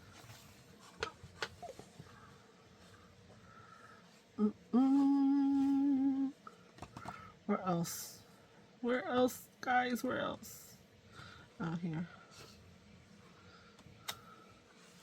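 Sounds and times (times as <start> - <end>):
woman humming: 4.4 - 6.4.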